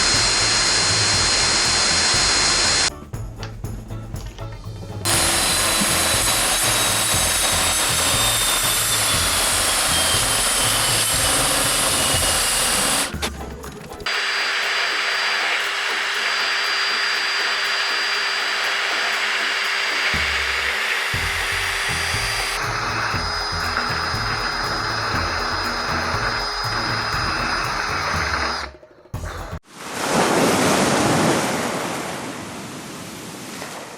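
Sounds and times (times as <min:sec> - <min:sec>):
power drill sanding fiberglass: 0:00.0 - 0:02.9, 0:05.1 - 0:13.2, 0:14.1 - 0:28.7.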